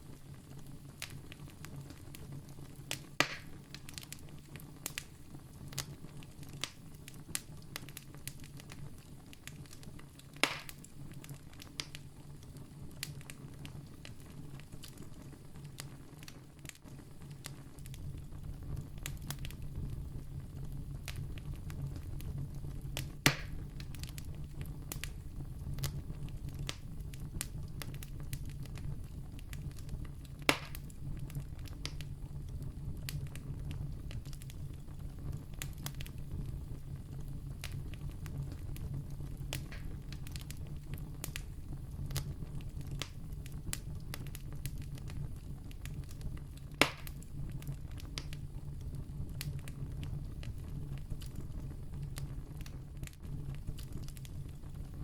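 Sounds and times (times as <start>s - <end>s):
campfire crackling: 0.0s - 55.0s
fire popping sharply: 2.9s - 4.2s, 9.8s - 12.1s, 21.0s - 55.0s.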